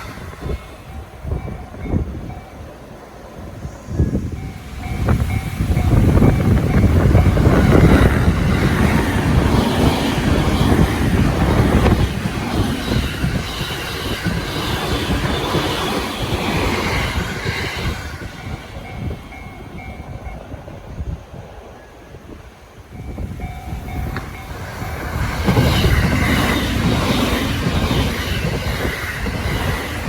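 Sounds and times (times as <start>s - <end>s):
train wheels clattering on rails: 0.0s - 30.0s
level crossing warning bell: 0.4s - 3.2s, 4.0s - 12.0s, 18.2s - 21.1s, 22.8s - 25.0s.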